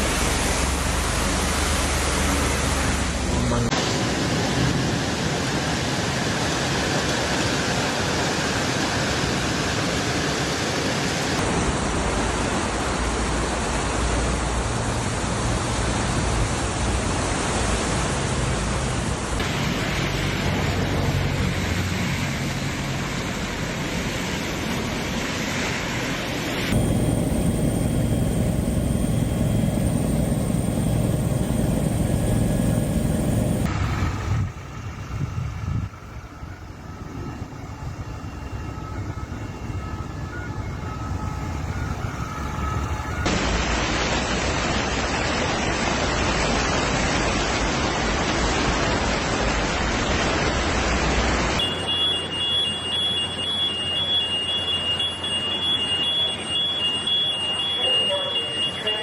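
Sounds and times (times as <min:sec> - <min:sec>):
heavy rain: 0:43.3 - 0:51.6.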